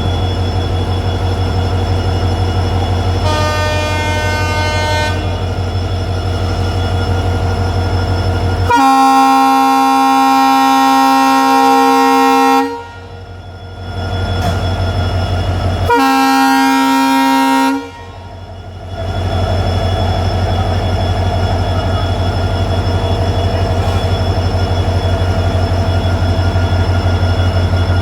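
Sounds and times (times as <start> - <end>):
locomotive engine rumbling: 0.0 - 28.0
locomotive air horn blowing: 3.2 - 5.4, 8.6 - 13.2, 15.8 - 18.3.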